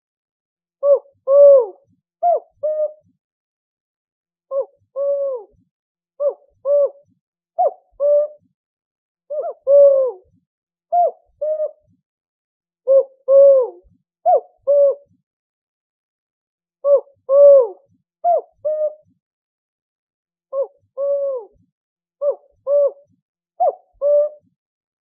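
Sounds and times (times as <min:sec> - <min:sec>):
owl hooting: 0:00.8 - 0:03.0, 0:04.5 - 0:05.6, 0:06.2 - 0:07.0, 0:07.6 - 0:08.5, 0:09.3 - 0:10.3, 0:10.9 - 0:11.8, 0:12.9 - 0:15.1, 0:16.8 - 0:19.0, 0:20.5 - 0:21.6, 0:22.2 - 0:24.5.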